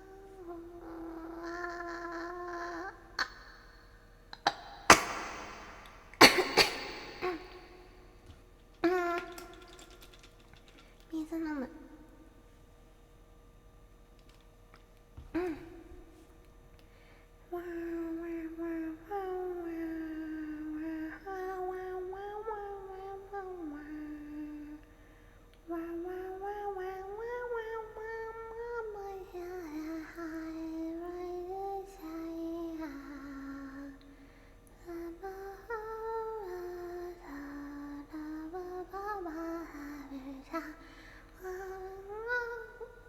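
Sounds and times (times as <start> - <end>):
woman singing wordless tune: 0.0 - 8.0, 8.8 - 10.0, 17.5 - 24.9, 25.6 - 43.0.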